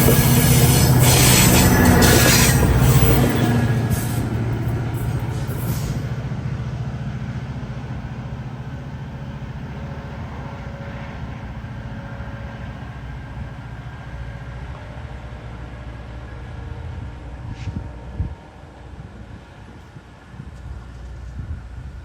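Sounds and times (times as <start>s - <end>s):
brief hiss: 0.0s - 6.1s
train wheels rumbling: 0.0s - 14.2s.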